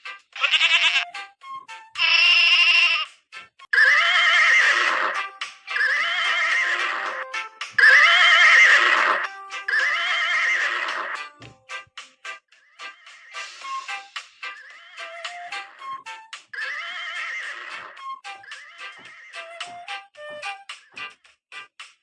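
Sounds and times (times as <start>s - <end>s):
background music: 0.0s - 22.0s
horse whinnying: 0.4s - 1.1s, 2.0s - 3.1s, 3.7s - 7.2s, 7.8s - 11.2s, 16.5s - 19.5s.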